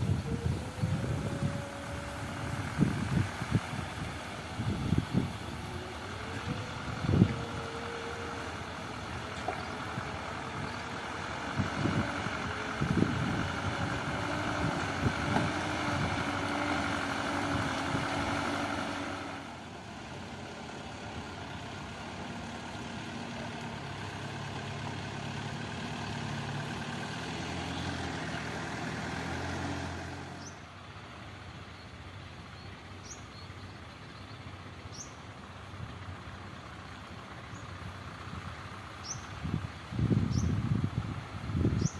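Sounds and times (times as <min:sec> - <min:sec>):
heavy diesel machinery running: 0:00.0 - 0:41.9.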